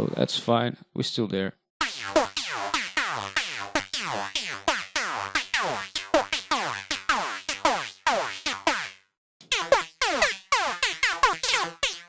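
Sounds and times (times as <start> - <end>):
high-pitched synth lead notes: 1.8 - 12.0.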